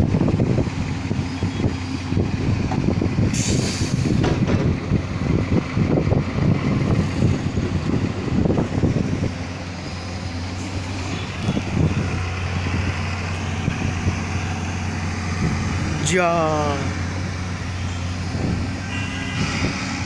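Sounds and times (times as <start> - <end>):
heavy vehicle engine rumbling: 0.0 - 20.0
short hiss: 3.4 - 4.2.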